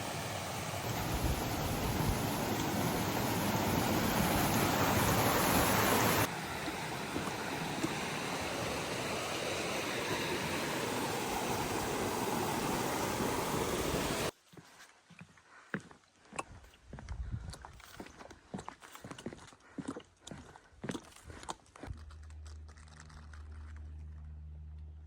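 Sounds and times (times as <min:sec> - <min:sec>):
rushing water: 0:00.0 - 0:14.3.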